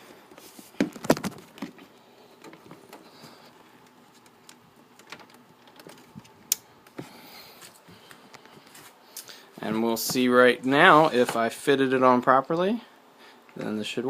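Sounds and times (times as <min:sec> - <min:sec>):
clicks and light knocks of handling: 0:00.8 - 0:10.2.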